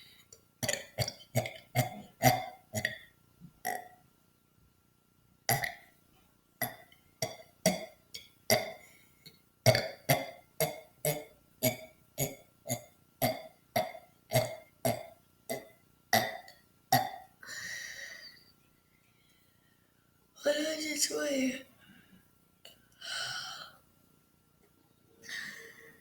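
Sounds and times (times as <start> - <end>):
person burping: 0.6 - 3.0, 3.6 - 3.9, 5.5 - 5.8, 6.6 - 8.8, 9.7 - 17.4
breathy sound: 17.4 - 18.5, 23.0 - 23.8, 25.2 - 26.0.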